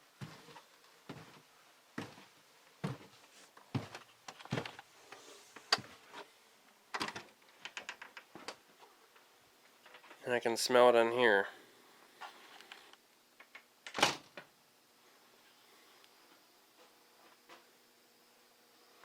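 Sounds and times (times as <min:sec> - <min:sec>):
footsteps on hard floor: 0:00.2 - 0:01.4, 0:02.0 - 0:04.8
small irregular knocks and clicks: 0:06.9 - 0:10.2, 0:13.4 - 0:14.5.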